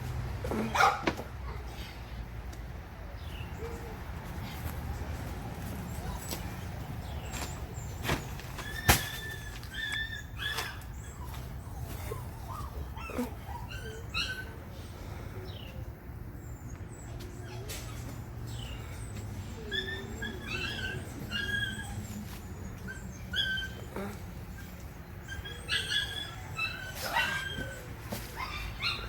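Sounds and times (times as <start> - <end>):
puppy whimpering: 8.6 - 14.7, 19.6 - 29.0.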